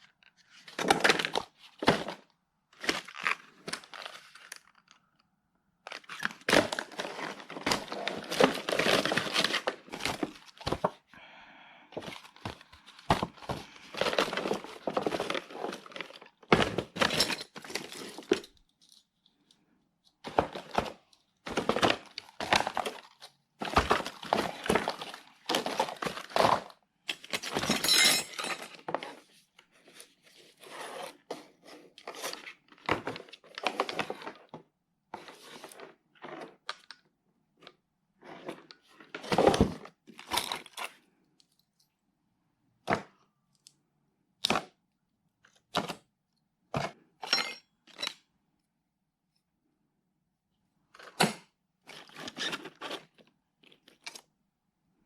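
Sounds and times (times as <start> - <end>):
packaging rustling and tearing: 2.8 - 5.0, 5.9 - 10.9, 12.0 - 18.5, 20.3 - 26.8
tools knocking and clattering: 47.2 - 48.1.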